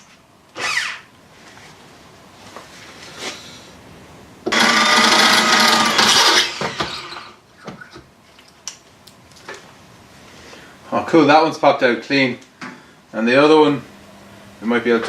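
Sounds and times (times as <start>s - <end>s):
electric drill drilling metal: 0.6s - 1.1s, 4.5s - 7.4s.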